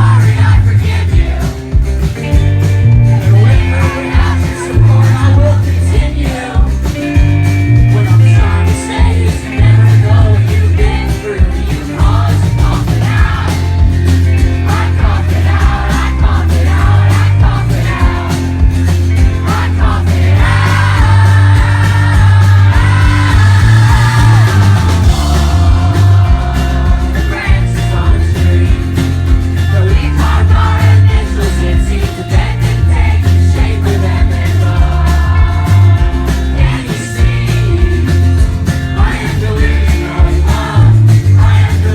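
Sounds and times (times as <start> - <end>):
live rock band playing: 0.0 - 41.9
person singing: 3.0 - 7.2, 19.3 - 38.4, 39.0 - 41.9.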